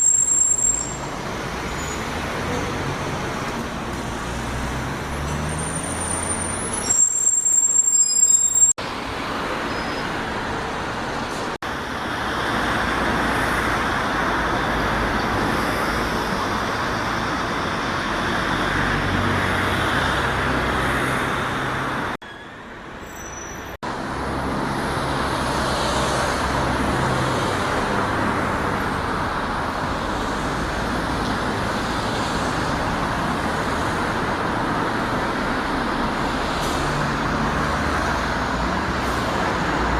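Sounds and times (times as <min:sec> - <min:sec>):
high thin squealing tones: 0:00.0 - 0:02.2, 0:05.4 - 0:08.8
buses passing: 0:00.0 - 0:39.9
engine and tyre noise: 0:00.0 - 0:39.9.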